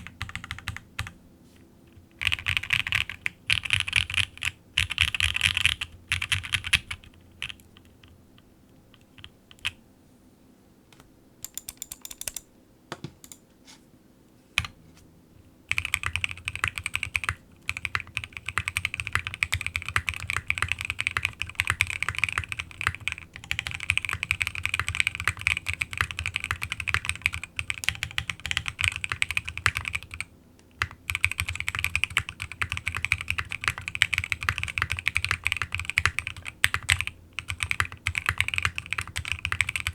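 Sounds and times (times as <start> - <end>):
keyboard typing clicks: 10.9 - 13.4.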